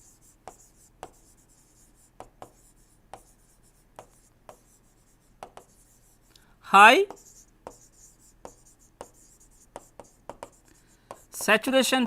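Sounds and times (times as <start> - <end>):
pen writing on paper: 0.0 - 6.2, 7.1 - 11.5.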